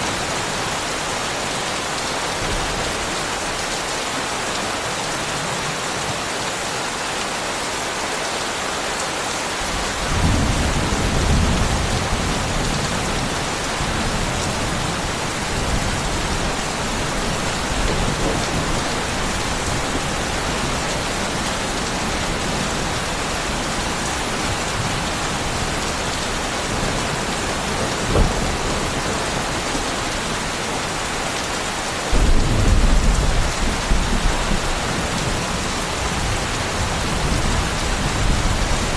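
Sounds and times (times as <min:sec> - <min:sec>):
steady rain falling: 0:00.0 - 0:38.9
thunder rumbling: 0:09.7 - 0:30.9, 0:32.1 - 0:38.9.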